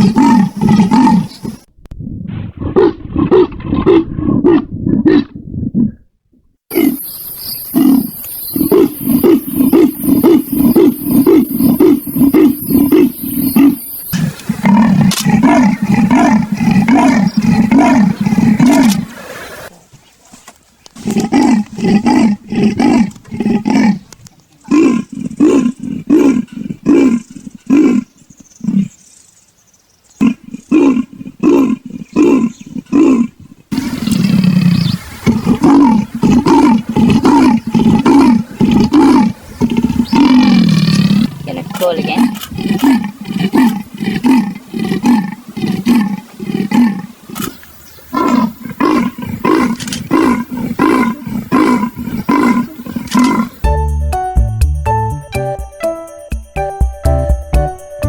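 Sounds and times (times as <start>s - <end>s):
leopard sawing call: 33.7s - 53.6s.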